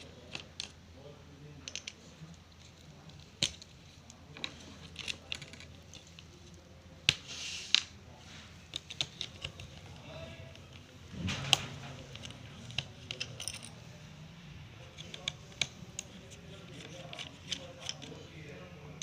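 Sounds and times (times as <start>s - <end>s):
short hissing scrape: 7.3s - 7.8s.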